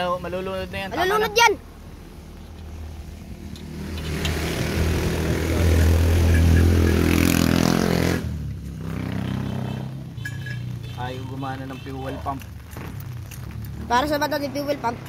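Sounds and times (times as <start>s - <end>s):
jeep engine revving: 3.3s - 10.1s.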